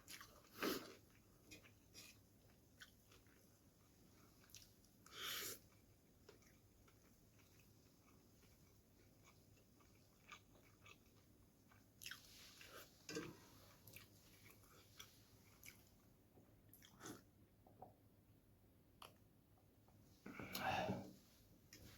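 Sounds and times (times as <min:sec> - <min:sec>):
wet chewing: 0:04.2 - 0:13.2, 0:13.8 - 0:16.0.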